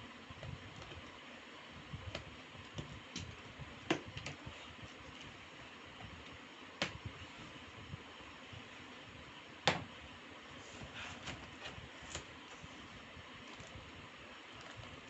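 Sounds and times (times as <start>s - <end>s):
clicks and taps handling laptop: 2.1s - 4.4s, 6.8s - 7.1s, 9.6s - 9.9s.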